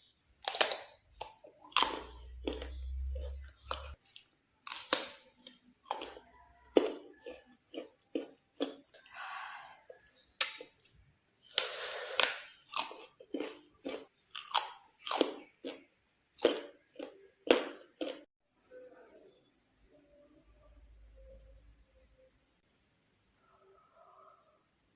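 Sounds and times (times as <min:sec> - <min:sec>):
crunchy bites and chewing: 0:00.4 - 0:09.1, 0:10.3 - 0:18.3.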